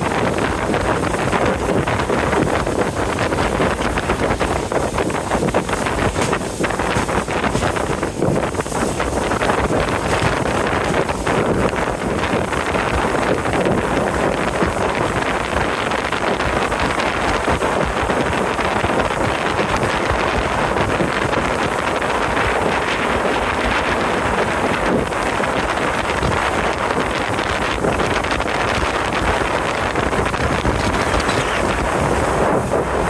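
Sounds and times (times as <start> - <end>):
wind rushing over microphone: 0.0 - 33.0.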